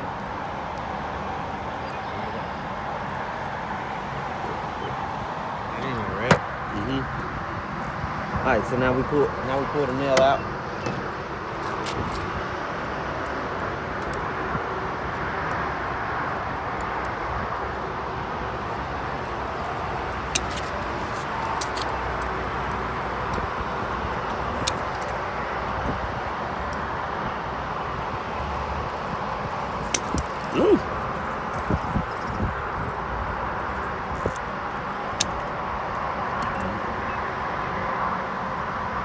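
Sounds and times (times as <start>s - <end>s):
traffic hiss and rumble: 0.0s - 39.0s
pliers clicking on nail: 20.1s - 25.2s.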